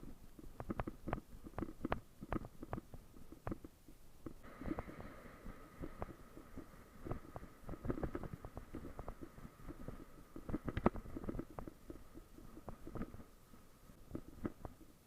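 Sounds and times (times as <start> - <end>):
bicycle rattling on rough trail: 4.4 - 13.4.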